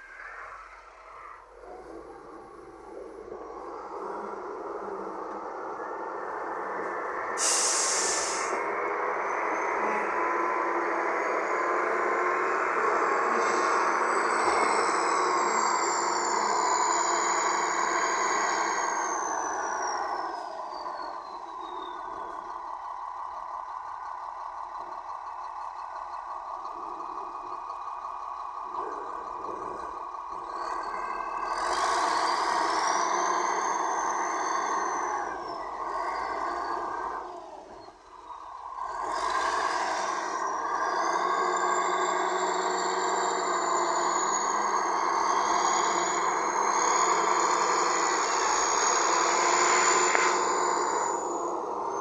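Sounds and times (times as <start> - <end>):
heavy diesel engine under load: 0.0 - 52.0
sharp hiss of air: 7.4 - 8.6.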